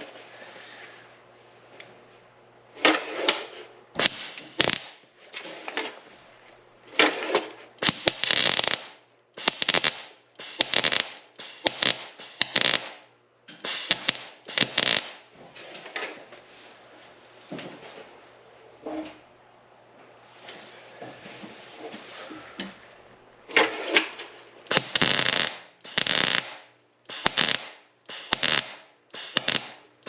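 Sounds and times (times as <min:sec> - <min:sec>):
welder arc crackling and popping: 0:03.2 - 0:05.1, 0:06.8 - 0:15.3, 0:24.4 - 0:30.0.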